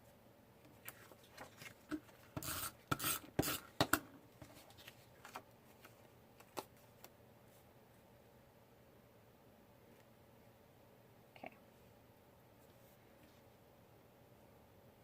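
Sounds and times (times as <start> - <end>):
paper rustling: 0.8 - 2.4, 4.4 - 7.1.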